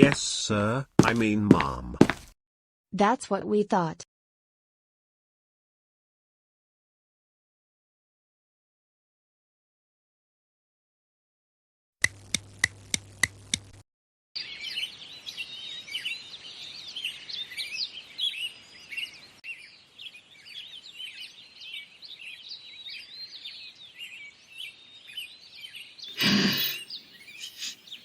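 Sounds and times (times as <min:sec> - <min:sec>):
small birds chirping: 0:14.4 - 0:28.0.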